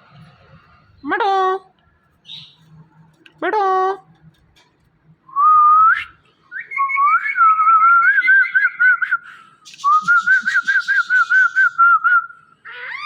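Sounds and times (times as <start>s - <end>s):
parrot whistling: 9.8s - 13.0s.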